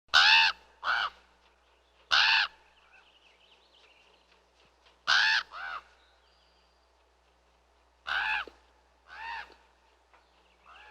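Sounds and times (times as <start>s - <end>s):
crow cawing: 0.1s - 1.2s, 2.1s - 2.6s, 5.1s - 5.9s, 8.0s - 9.6s.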